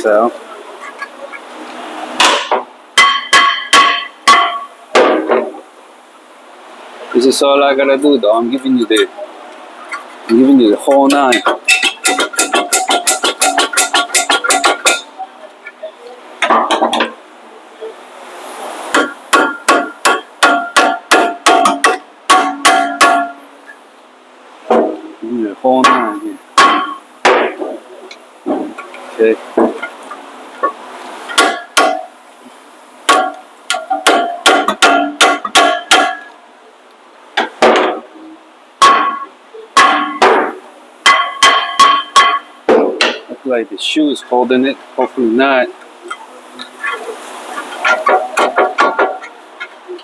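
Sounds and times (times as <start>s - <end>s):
metal ringing: 2.2s - 5.6s, 9.9s - 17.2s, 37.7s - 43.3s
hammer striking metal rotor: 10.8s - 15.1s, 19.0s - 23.4s.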